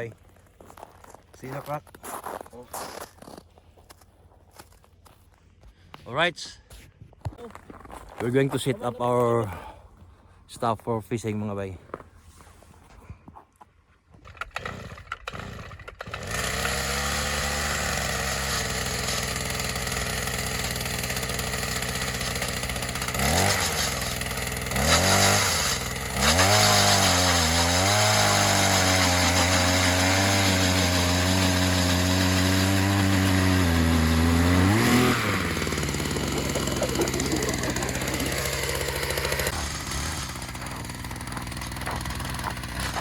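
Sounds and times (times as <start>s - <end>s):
ice auger engine revving: 14.2s - 43.0s.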